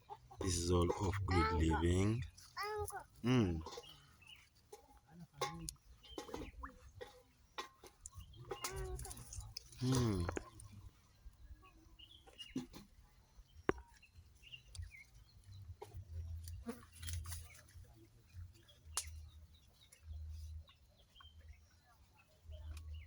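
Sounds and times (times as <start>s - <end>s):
bird chirps: 5.6s - 23.0s.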